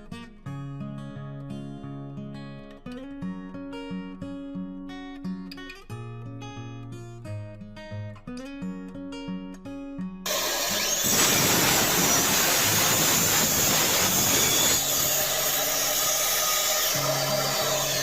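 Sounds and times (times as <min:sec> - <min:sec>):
acoustic guitar music: 0:00.0 - 0:15.1, 0:17.0 - 0:18.0
circular saw cutting wood: 0:10.3 - 0:18.0.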